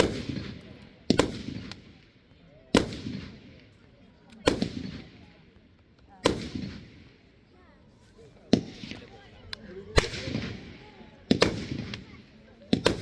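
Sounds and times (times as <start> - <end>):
fireworks bangs with rumbling echo: 0.0 - 2.1, 2.7 - 3.8, 4.4 - 5.4, 6.1 - 7.2, 8.5 - 9.2, 9.9 - 13.0.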